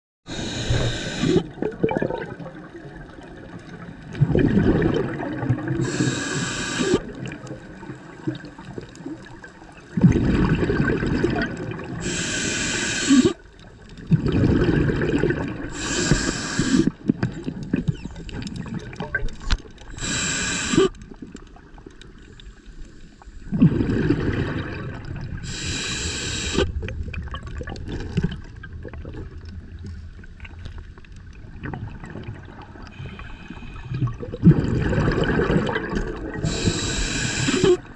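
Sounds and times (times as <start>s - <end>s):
diver breathing through regulator: 0.3s - 1.4s, 5.8s - 7.1s, 12.0s - 13.4s, 15.7s - 17.0s, 19.9s - 21.0s, 25.4s - 26.7s, 36.4s - 37.9s
bubbling exhaled air with hiss: 0.3s - 2.3s, 4.2s - 9.2s, 10.0s - 13.5s, 14.1s - 17.0s, 19.9s - 21.1s, 22.4s - 28.4s, 32.8s - 37.9s.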